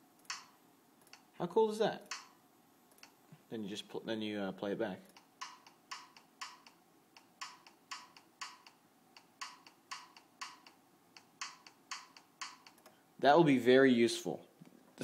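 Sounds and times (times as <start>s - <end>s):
drum machine hi-hat ticks: 0.2s - 1.4s, 2.0s - 3.2s, 5.0s - 13.0s.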